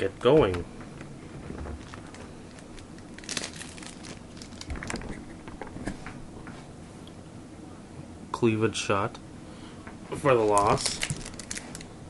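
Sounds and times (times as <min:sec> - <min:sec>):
card pack wrapper crinkling: 0:01.8 - 0:05.2, 0:10.4 - 0:11.9.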